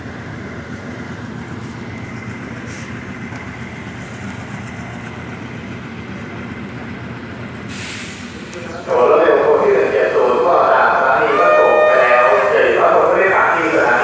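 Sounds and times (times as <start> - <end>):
train wheels rumbling on rails: 0.0 - 14.0
brief hiss: 7.7 - 8.4, 13.6 - 14.0.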